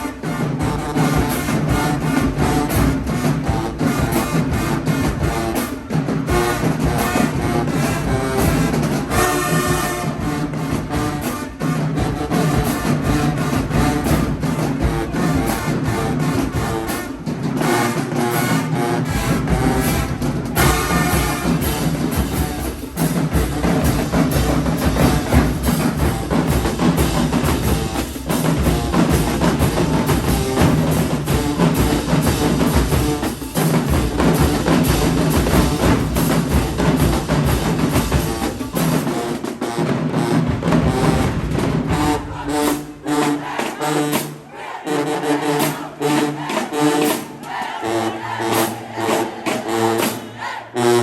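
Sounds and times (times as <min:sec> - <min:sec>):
brass section playing: 0:00.0 - 0:51.0
drumline beats: 0:00.0 - 0:51.0
bass drums and snares beating: 0:19.0 - 0:39.2.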